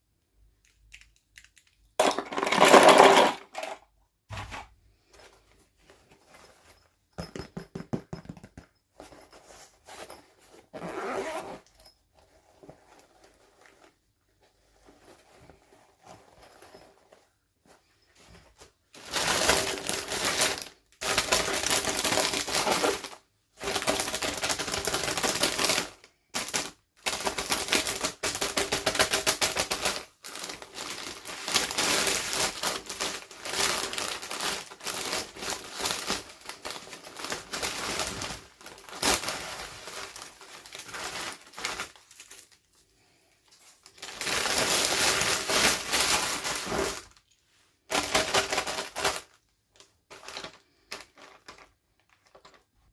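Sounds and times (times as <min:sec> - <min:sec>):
plastic packaging crackling: 0:19.1 - 0:42.7, 0:43.7 - 0:47.3, 0:47.9 - 0:52.6.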